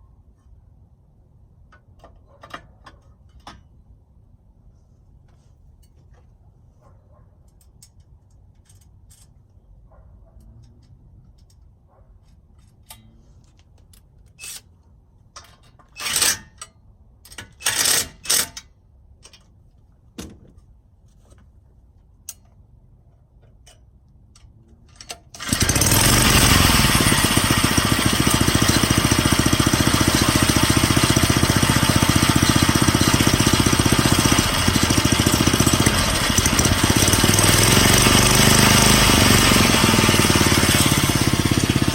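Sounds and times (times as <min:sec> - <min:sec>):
small engine clicks: 0:24.4 - 0:41.9
small engine running: 0:25.4 - 0:41.9.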